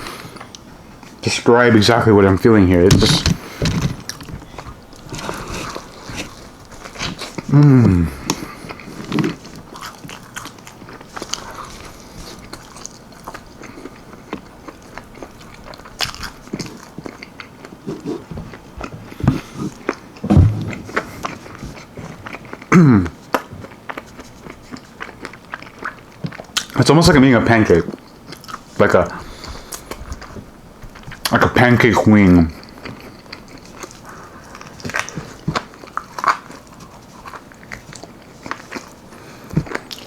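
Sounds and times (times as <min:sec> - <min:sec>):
biting and chewing crunchy food: 0:02.7 - 0:40.0.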